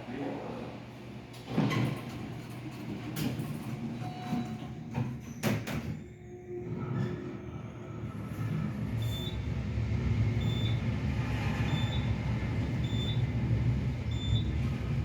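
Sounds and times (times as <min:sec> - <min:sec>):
elevator low rumble: 0:06.0 - 0:15.0.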